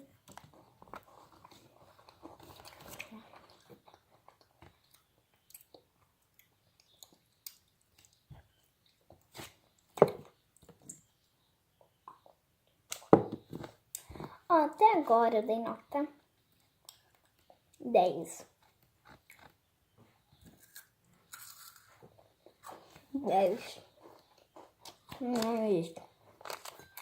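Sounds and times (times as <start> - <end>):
person chewing wafer bar: 0.2 - 10.7, 18.6 - 19.6, 20.4 - 23.1, 23.9 - 25.2.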